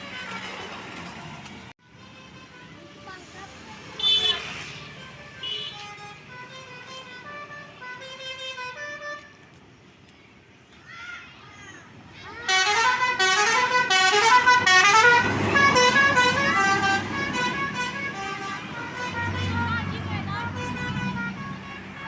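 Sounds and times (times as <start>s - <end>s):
low engine rumble: 12.2s - 22.0s
tuned air horn melody: 12.5s - 22.0s.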